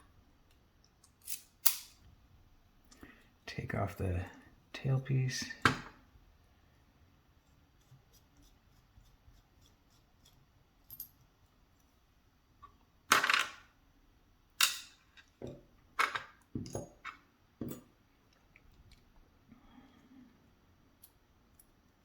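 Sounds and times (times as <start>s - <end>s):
metal lock parts clicking: 1.0s - 2.0s.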